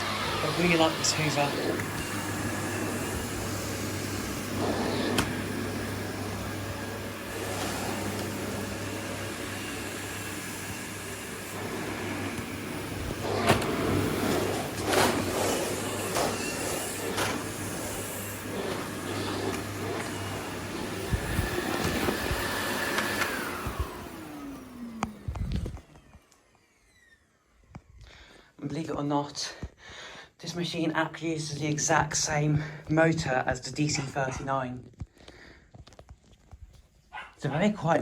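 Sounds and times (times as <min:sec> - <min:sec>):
vacuum cleaner whining: 0:00.0 - 0:29.2.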